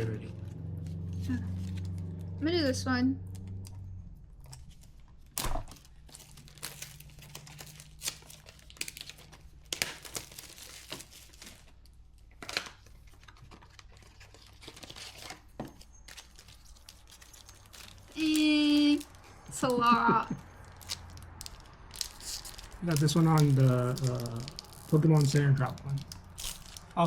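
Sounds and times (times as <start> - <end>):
foil wrapper crinkling: 4.6 - 19.8, 20.4 - 27.0
foil wrapper ripping: 5.3 - 15.5, 16.1 - 19.8, 20.5 - 27.0.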